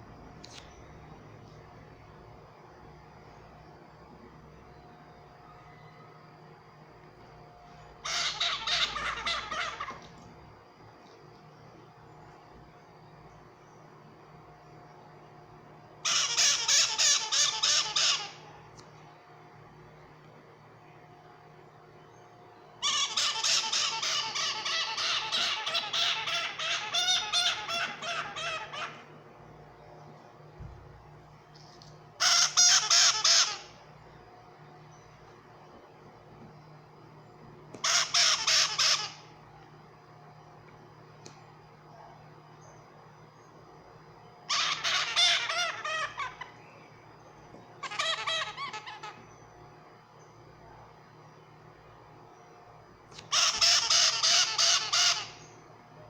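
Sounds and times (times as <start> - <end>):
parrot squawking: 8.0 - 10.1, 16.0 - 18.5, 22.8 - 29.1, 32.2 - 33.8, 37.8 - 39.3, 44.5 - 46.6, 47.8 - 49.2, 53.2 - 55.5.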